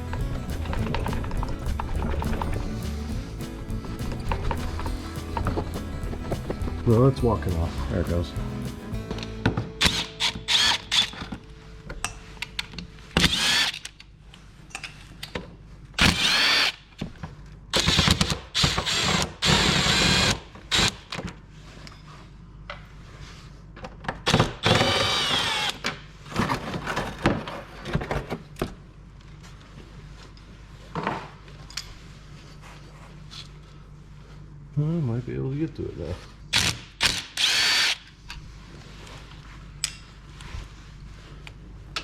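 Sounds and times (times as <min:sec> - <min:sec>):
power drill whine: 0:09.8 - 0:11.4, 0:13.2 - 0:14.0, 0:16.0 - 0:16.8, 0:17.8 - 0:21.0, 0:24.3 - 0:25.8, 0:36.6 - 0:38.1.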